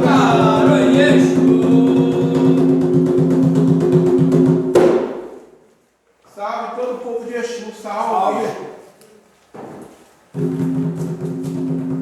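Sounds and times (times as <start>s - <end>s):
group singing a chant: 0.0s - 3.8s
fast hand drumming: 0.0s - 4.8s, 10.4s - 12.0s.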